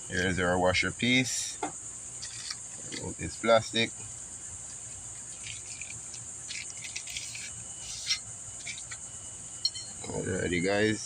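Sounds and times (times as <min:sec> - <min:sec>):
crickets chirring: 0:00.0 - 0:11.0
plastic packaging crinkling: 0:04.7 - 0:09.0.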